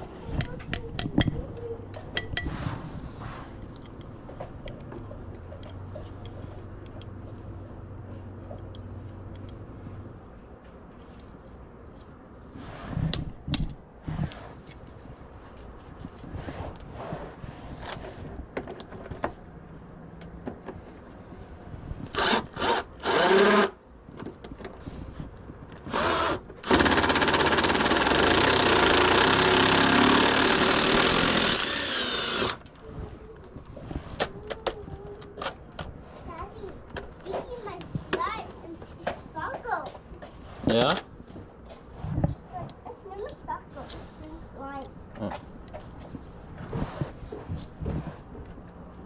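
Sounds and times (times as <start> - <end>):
handheld power tool running: 22.1 - 23.8, 25.9 - 32.7.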